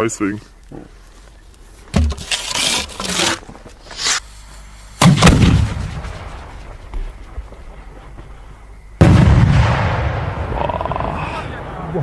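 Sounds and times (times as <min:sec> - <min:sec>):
firework bang: 0:05.0 - 0:06.8, 0:09.0 - 0:10.6.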